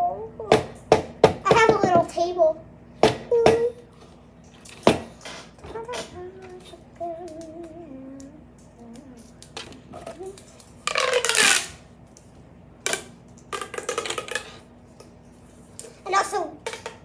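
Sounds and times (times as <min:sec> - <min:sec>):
child humming: 0:00.0 - 0:00.7, 0:03.3 - 0:03.9, 0:05.6 - 0:10.4
plastic toys clicking and rattling: 0:08.9 - 0:11.8, 0:12.9 - 0:14.6.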